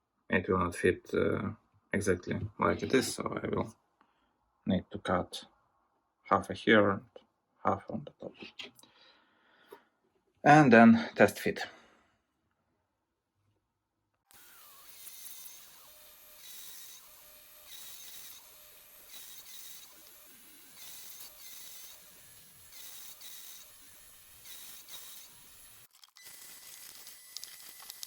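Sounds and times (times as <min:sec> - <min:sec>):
rasping cutting strokes on metal: 0:14.3 - 0:25.9.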